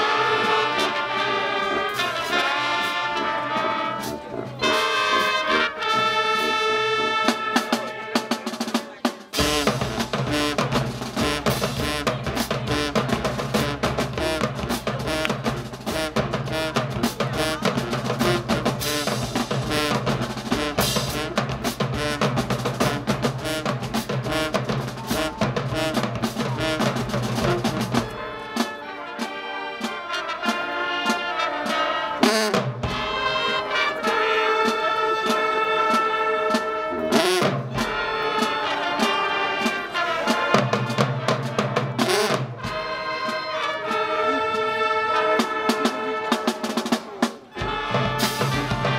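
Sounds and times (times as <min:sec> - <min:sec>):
held brass chord: 0:00.0 - 0:08.5, 0:47.6 - 0:48.9
marching band playing: 0:00.0 - 0:48.9
bass drums and snares: 0:09.4 - 0:28.1, 0:47.6 - 0:48.9.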